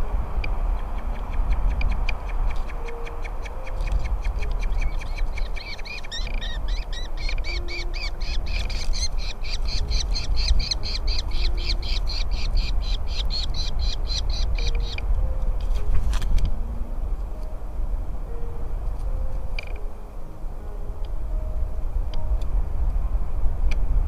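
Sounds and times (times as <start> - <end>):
nestling birds chirping: 0.4 - 15.2.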